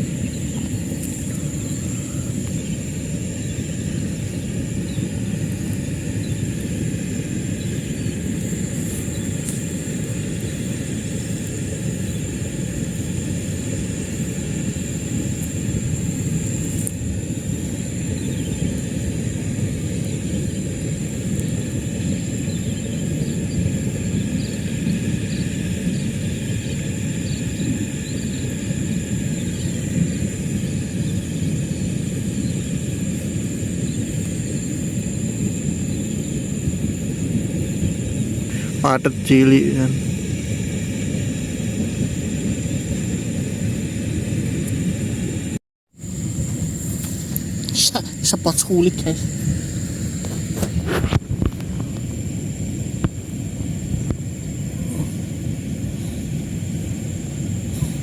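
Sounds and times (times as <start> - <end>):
faint chirps: 0.0 - 6.8, 38.4 - 40.5
high whine: 0.0 - 58.0
low rumbling noise: 0.0 - 58.0.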